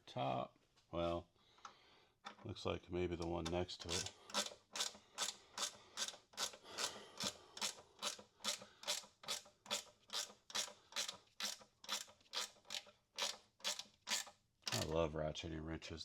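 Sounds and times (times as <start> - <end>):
ratchet wrench rasps: 3.8 - 14.9.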